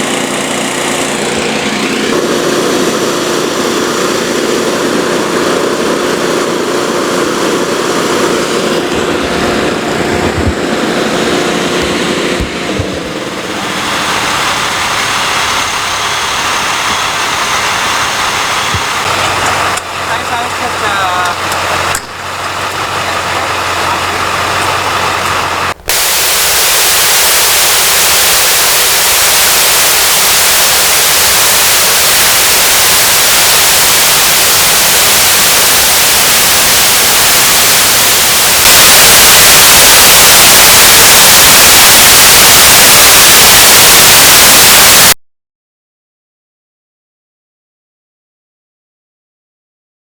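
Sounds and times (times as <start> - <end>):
engine idling: 0.0 - 45.1
loud static hiss: 13.2 - 45.2.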